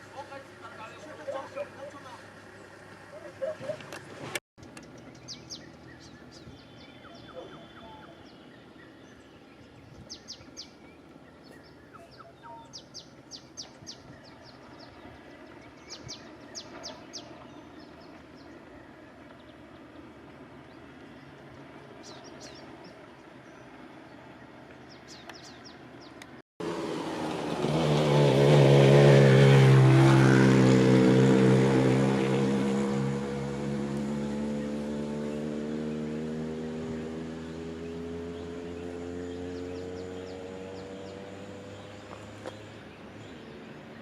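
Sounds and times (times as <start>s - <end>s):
small birds chirping: 4.6s - 26.4s, 34.0s - 44.0s
steady engine drone: 10.6s - 44.0s.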